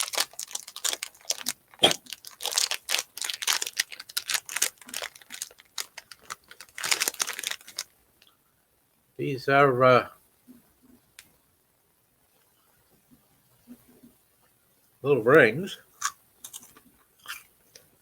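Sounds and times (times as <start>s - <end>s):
plastic wrapper crinkling: 0.0s - 8.3s.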